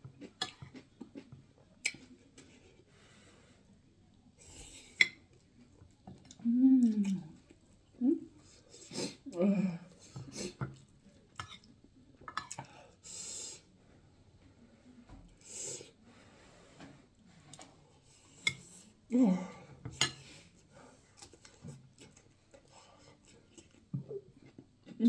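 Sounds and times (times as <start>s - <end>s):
chewing: 0.1s - 2.7s, 21.0s - 25.0s
person humming mm: 6.4s - 7.4s.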